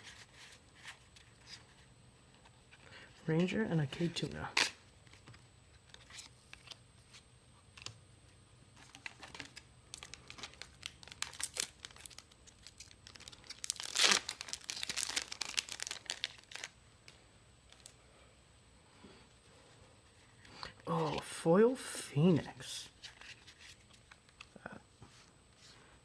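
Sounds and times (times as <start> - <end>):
foil wrapper tearing and crinkling: 8.8 - 16.8
rustles and clicks of handling: 22.9 - 25.9.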